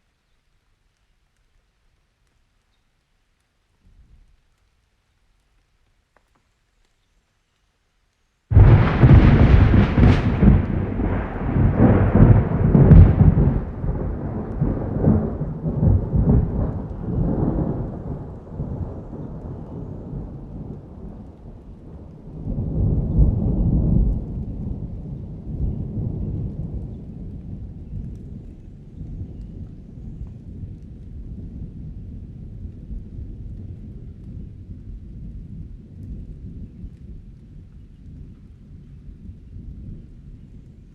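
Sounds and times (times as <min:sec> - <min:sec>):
rolling thunder: 0:08.5 - 0:40.9.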